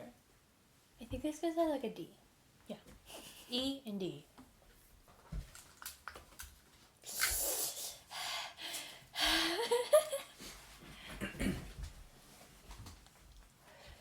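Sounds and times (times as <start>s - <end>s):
person breathing hard through mouth: 7.3s - 9.6s.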